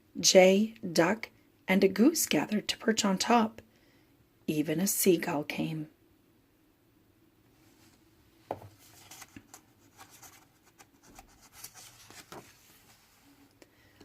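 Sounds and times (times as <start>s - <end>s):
paper rustling: 8.7s - 13.5s.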